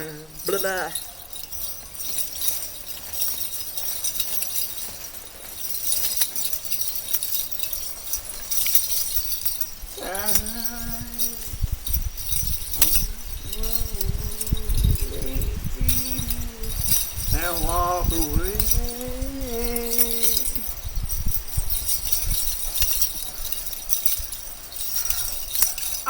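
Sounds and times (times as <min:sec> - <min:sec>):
person's voice: 0:00.0 - 0:01.1, 0:10.0 - 0:11.6, 0:12.8 - 0:20.7
metallic jingling and clinking: 0:00.0 - 0:26.0.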